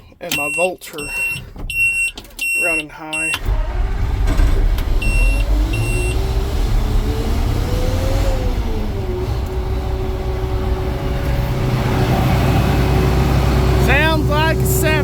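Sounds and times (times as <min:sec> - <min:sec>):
short electronic beep: 0:00.4 - 0:03.4
vehicle engine rumbling: 0:03.2 - 0:15.0
engine whine: 0:03.3 - 0:15.0.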